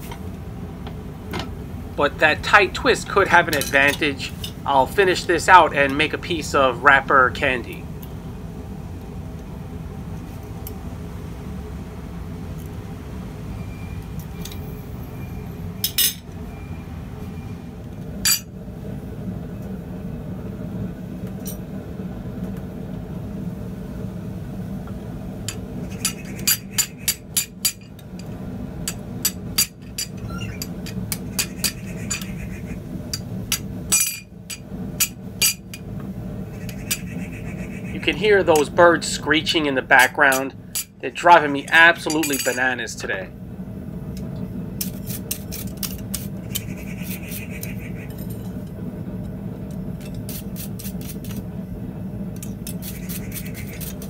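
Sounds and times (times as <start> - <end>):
steady low hum: 0.0 - 54.0
hammer striking steel on anvil: 41.7 - 42.6.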